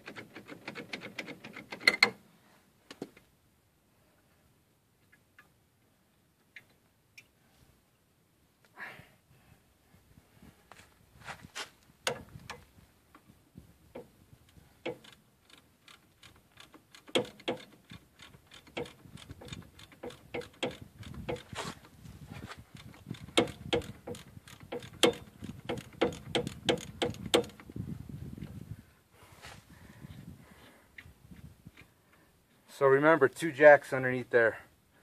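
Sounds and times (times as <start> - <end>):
socket ratchet clicking: 14.8 - 21.5, 22.7 - 27.7.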